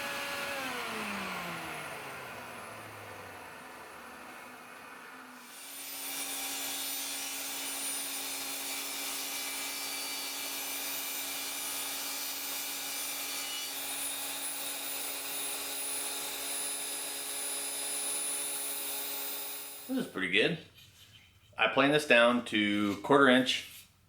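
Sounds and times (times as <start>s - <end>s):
thickness planer planing board: 0.0s - 8.0s.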